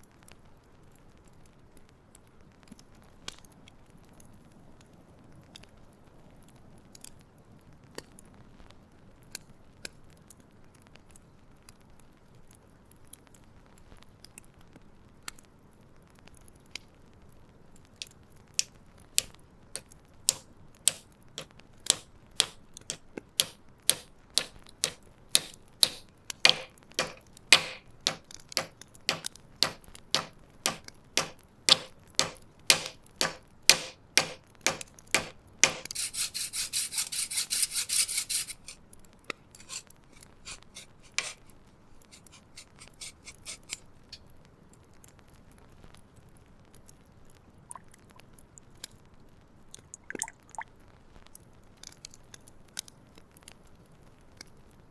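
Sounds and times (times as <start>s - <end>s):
hand rubbing strokes on hammer: 20.3s - 21.0s, 21.9s - 22.6s, 23.4s - 38.8s, 39.6s - 41.5s, 42.1s - 43.8s.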